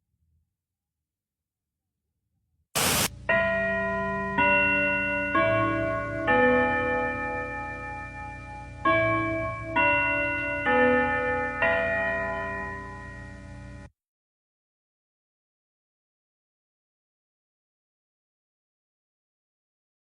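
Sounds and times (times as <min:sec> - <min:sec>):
clock bell chime: 0:03.3 - 0:13.9.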